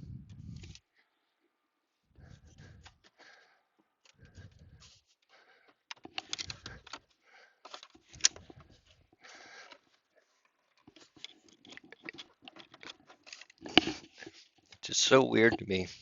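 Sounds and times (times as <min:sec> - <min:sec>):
scraping and rustling: 0:10.2 - 0:16.0.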